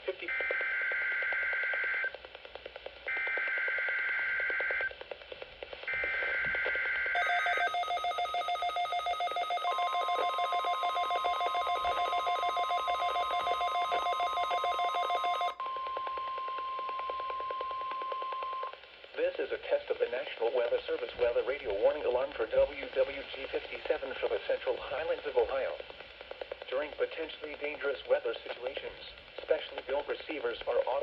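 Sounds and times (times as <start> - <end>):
rapidly pulsing electronic alert: 5.9 - 18.7
steady warning alarm tone: 5.9 - 18.7
buzzy digital header tones: 7.2 - 15.6.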